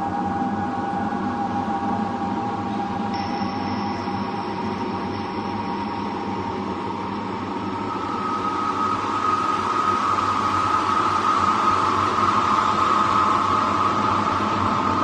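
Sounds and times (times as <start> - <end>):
ominous hissy rumble drone: 0.0 - 15.0
thin high tone: 3.1 - 6.4
mid-pitched tone: 3.1 - 10.6.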